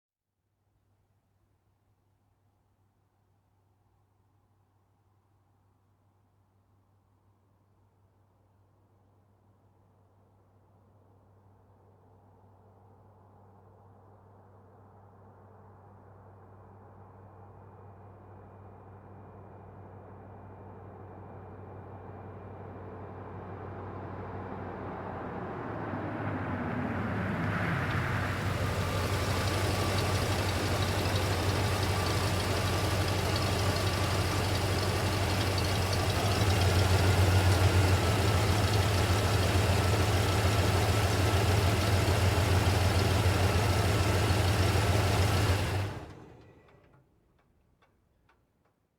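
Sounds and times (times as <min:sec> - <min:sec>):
truck engine idling: 0:27.7 - 0:46.8.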